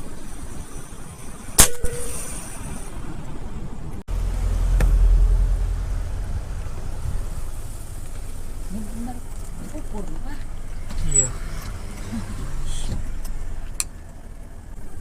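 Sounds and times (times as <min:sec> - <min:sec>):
low rumble: 0:00.3 - 0:10.9.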